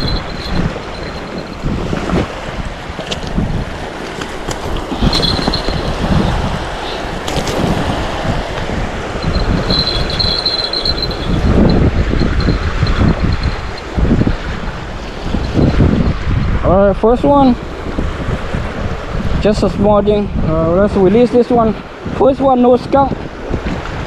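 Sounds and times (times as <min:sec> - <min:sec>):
high thin tone: 0:00.0 - 0:01.8, 0:09.7 - 0:11.7
wind buffeting microphone: 0:00.0 - 0:21.1.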